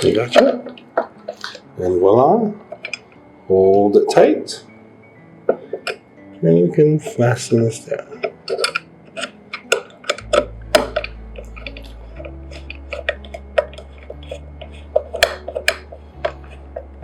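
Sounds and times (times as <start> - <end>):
low hum: 8.2 - 17.0.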